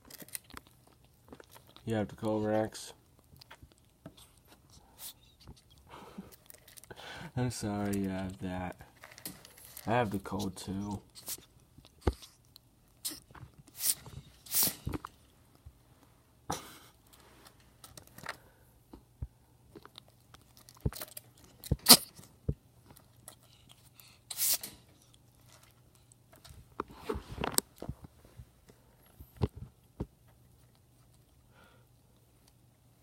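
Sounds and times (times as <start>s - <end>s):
small clicks and rustles: 0.0s - 1.9s, 3.0s - 6.9s, 7.8s - 10.0s
ferret sneezing: 13.0s - 14.9s, 21.8s - 22.1s, 24.3s - 24.8s.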